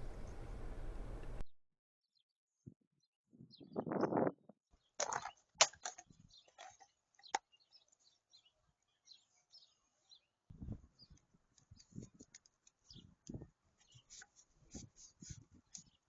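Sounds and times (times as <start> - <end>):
birds chirping faintly: 0.0 - 1.4, 3.4 - 16.0
oil filter housing clicks and knocks: 5.0 - 7.4.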